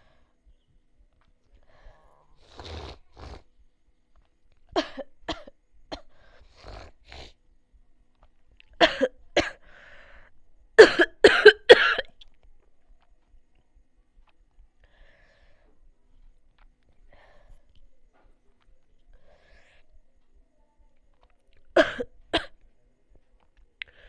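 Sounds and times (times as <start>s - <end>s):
person coughing: 8.8s - 9.6s, 10.8s - 12.1s, 21.8s - 22.6s.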